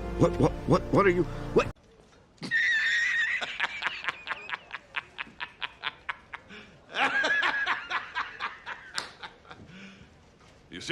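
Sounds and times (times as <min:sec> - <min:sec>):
high-pitched snickering laugh: 0:02.4 - 0:09.6.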